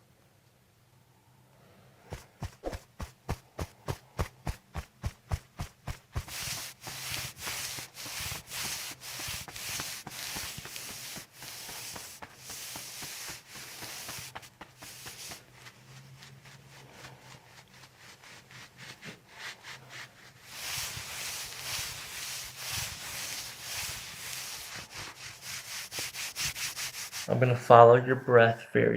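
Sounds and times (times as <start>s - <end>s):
hands rubbing skin and clothing: 2.1s - 27.6s
hands tapping on body: 9.4s - 15.5s.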